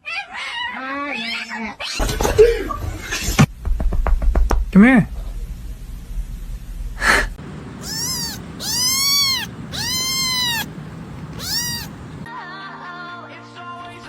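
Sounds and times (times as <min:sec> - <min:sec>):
cat meowing: 0:07.8 - 0:12.2
music: 0:12.3 - 0:14.0.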